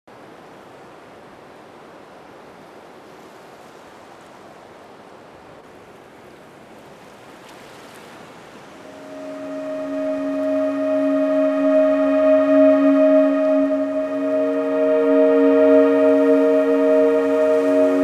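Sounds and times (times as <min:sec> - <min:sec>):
ocean waves washing: 0:08.0 - 0:18.0.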